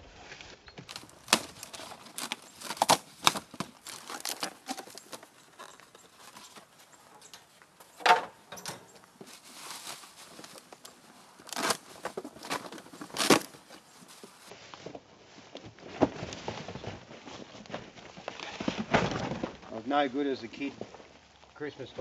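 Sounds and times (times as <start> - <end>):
packaging rustling and tearing: 0.9 - 6.9, 9.0 - 14.5.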